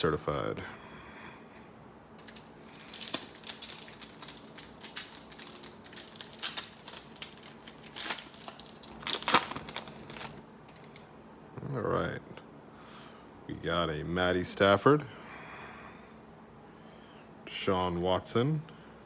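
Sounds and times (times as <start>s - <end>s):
wrapper tearing and crinkling: 2.2s - 11.0s.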